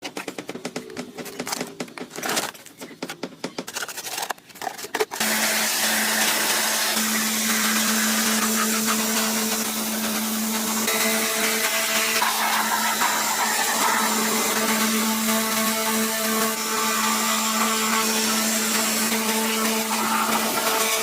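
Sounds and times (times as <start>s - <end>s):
machine motor hissing and humming: 5.2s - 21.0s.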